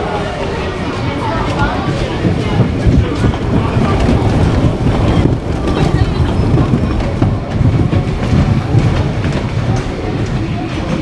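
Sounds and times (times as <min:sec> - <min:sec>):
ride train clattering on track: 0:00.0 - 0:11.0.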